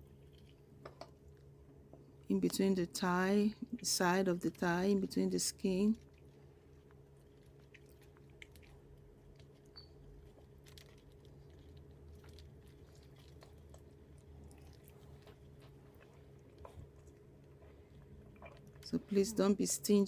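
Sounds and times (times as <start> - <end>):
low steady hum: 0.0 - 20.0
hands squelching butter on skin: 6.1 - 19.3.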